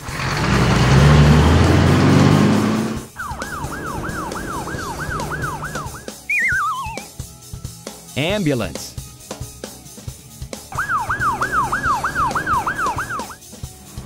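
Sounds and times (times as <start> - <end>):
warbling siren tone: 3.1 - 7.1, 10.7 - 13.4
falling wobbling whistle: 3.2 - 7.1, 10.7 - 13.4
cartoon engine rumble: 10.7 - 13.4.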